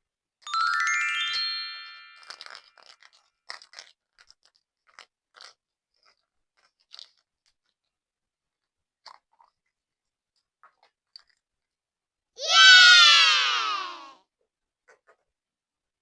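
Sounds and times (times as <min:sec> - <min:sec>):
bright chime: 0:00.5 - 0:02.6.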